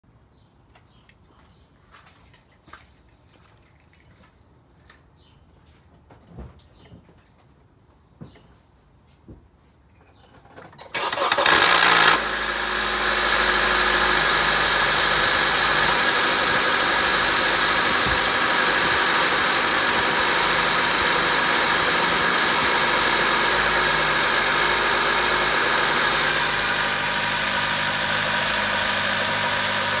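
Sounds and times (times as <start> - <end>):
engine starting: 10.8 - 28.0
harsh grinding rattle: 10.9 - 30.0
engine idling: 11.0 - 30.0.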